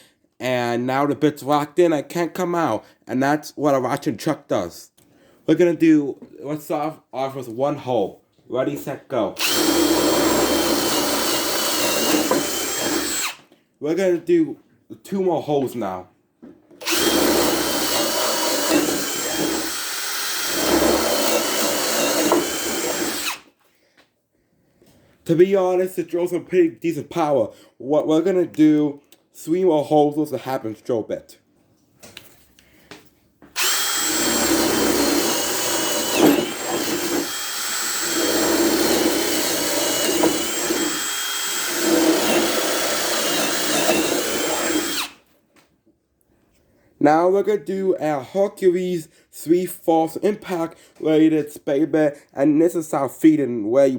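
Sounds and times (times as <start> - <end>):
hammer drill boring: 9.4 - 13.4, 16.8 - 23.5, 33.6 - 45.2.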